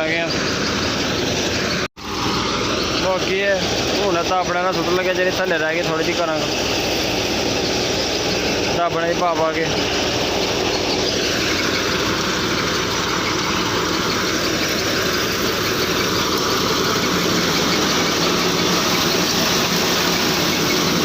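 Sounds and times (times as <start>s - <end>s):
threshing drum whirring: 0.0s - 21.0s
tractor engine hum: 0.0s - 21.0s.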